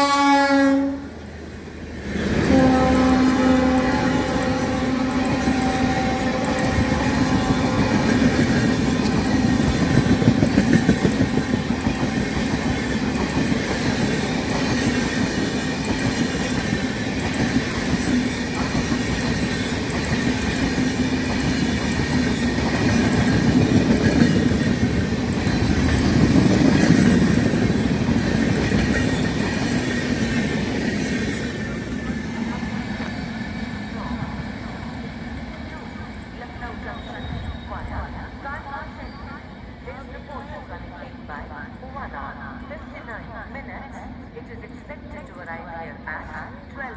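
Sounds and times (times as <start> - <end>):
locomotive horn: 0.0 - 1.2, 2.4 - 11.8
train coaches rumbling: 0.0 - 46.9
wheels clattering over rail joints: 4.3 - 33.6.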